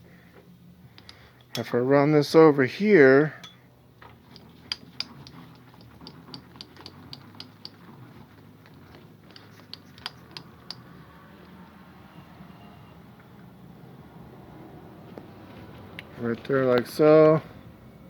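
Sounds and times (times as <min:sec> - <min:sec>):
metal parts clicking on a lathe: 0:03.4 - 0:11.6.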